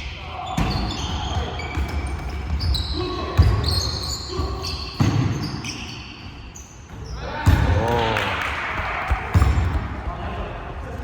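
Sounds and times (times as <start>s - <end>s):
sneakers squeaking on court floor: 0.0s - 7.9s.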